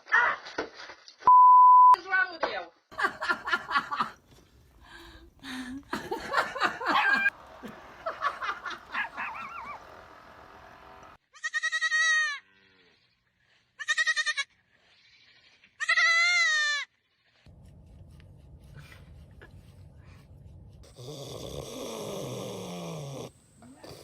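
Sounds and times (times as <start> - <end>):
wavering animal bleats: 11.3 - 13.1, 13.8 - 17.5.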